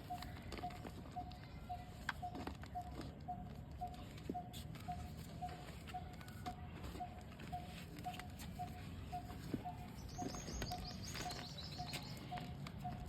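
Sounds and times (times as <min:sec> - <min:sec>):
bird piping calls: 0:07.0 - 0:13.0
high bird chirps: 0:07.0 - 0:13.0.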